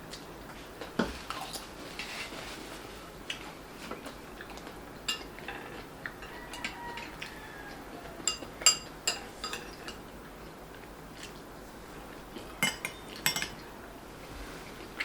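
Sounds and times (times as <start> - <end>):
cutlery clinking on plates: 5.1 - 7.1, 8.2 - 10.0, 12.6 - 13.6.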